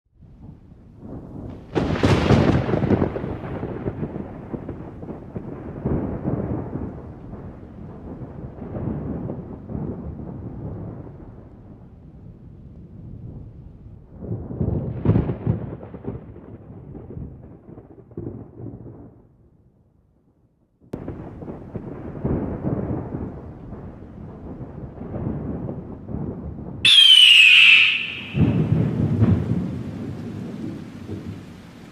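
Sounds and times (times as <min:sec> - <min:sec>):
thunder crack and rolling rumble: 0:00.2 - 0:19.6, 0:20.9 - 0:31.9.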